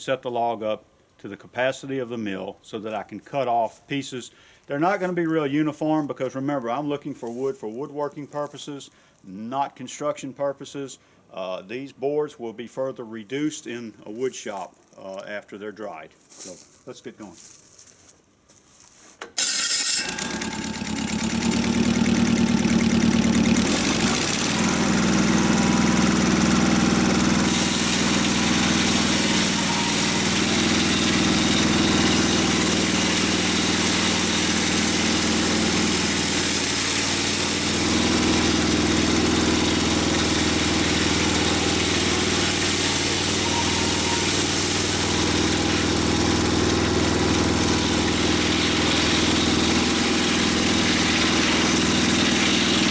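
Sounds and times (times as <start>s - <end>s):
sawmill engine running: 19.4s - 52.9s.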